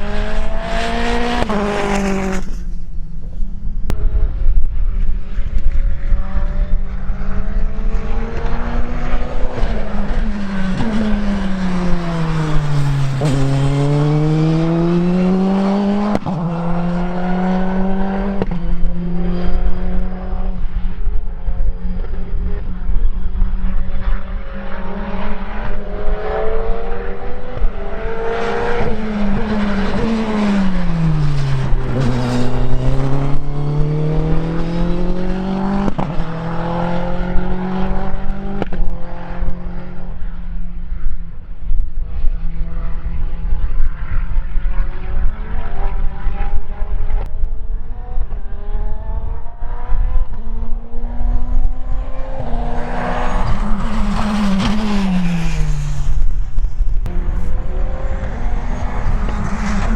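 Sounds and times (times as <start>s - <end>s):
race car engine running hard: 56.4s - 59.9s.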